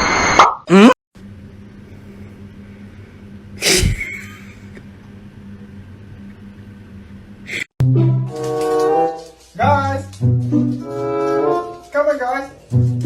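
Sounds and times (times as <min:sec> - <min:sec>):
steady low hum: 0:01.2 - 0:07.7
sharp sneeze-like burst: 0:03.6 - 0:04.2.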